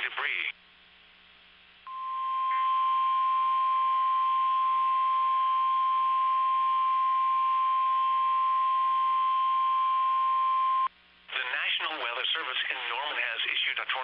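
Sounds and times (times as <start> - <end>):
faint radio hiss: 0.0 - 2.8, 10.9 - 14.0
steady warning alarm tone: 1.9 - 10.9.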